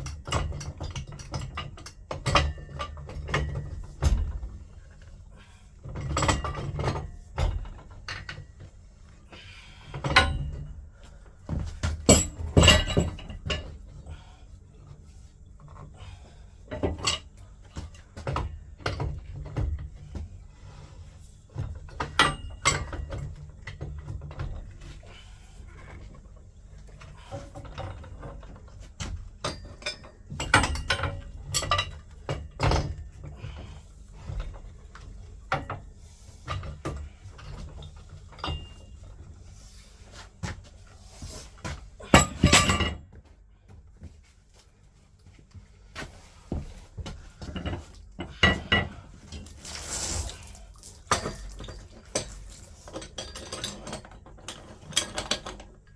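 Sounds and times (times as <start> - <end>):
metal tools and pipe fittings clattering: 0.0 - 4.5, 5.8 - 8.6, 9.9 - 10.8, 11.9 - 14.0, 29.4 - 34.7, 36.5 - 39.4, 41.5 - 43.2, 47.4 - 55.8.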